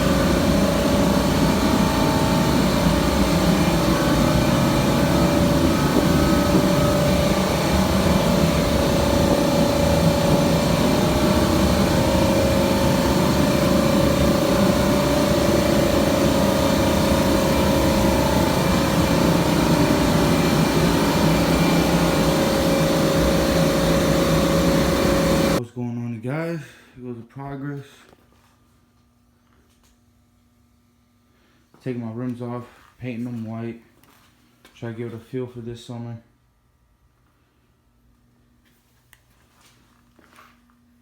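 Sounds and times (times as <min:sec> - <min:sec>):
engine droning: 0:00.0 - 0:25.6.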